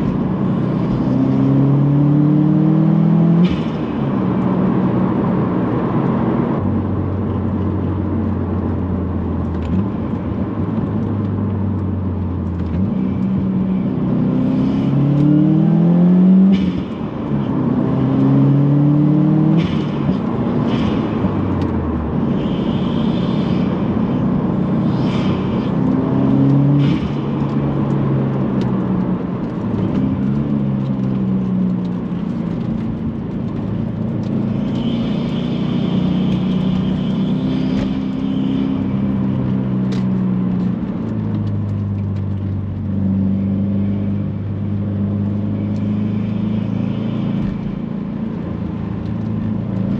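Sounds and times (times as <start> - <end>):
car engine accelerating: 0.0 - 22.2.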